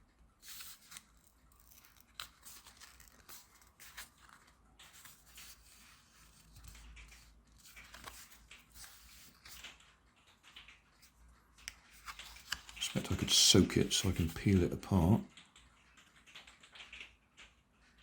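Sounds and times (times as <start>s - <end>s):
packaging rustling and crinkling: 0.4s - 14.6s.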